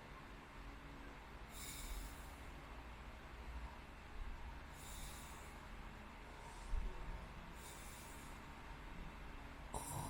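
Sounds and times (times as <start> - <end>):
faint low hum: 0.0 - 10.0
soft airy breath: 1.4 - 2.7, 4.6 - 9.0, 9.6 - 10.0.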